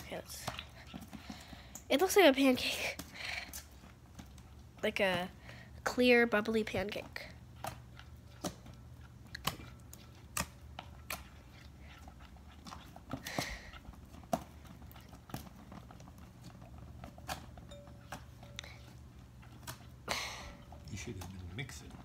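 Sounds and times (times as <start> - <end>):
slime stirred in a bowl: 6.3 - 22.0.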